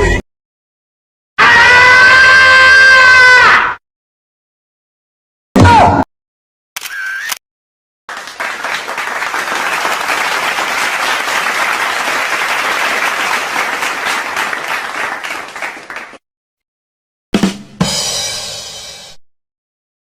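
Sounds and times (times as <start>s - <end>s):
crowd applauding: 8.1s - 16.2s.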